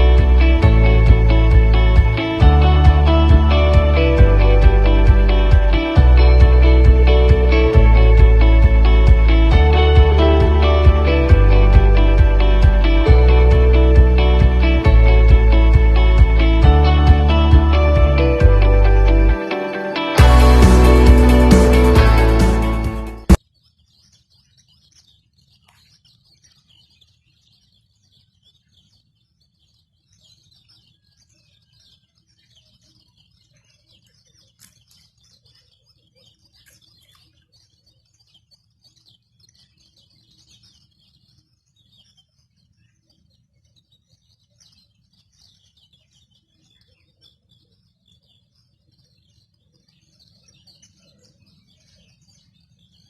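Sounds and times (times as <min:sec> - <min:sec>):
low background rumble: 0:00.0 - 0:19.4.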